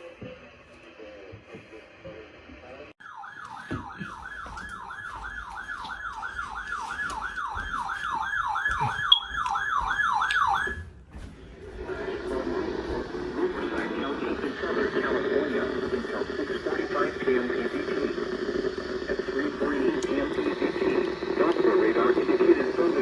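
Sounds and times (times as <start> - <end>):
siren yelping: 3.0 - 10.9.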